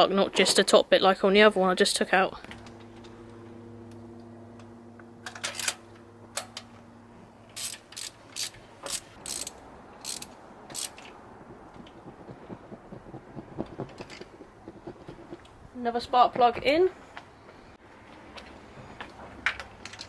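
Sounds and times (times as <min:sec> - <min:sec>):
hand tool clicking: 0:07.6 - 0:11.0.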